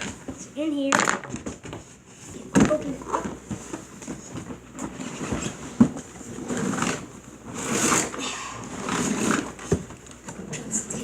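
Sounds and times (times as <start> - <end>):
cardboard rustling and scraping: 1.2 - 10.0.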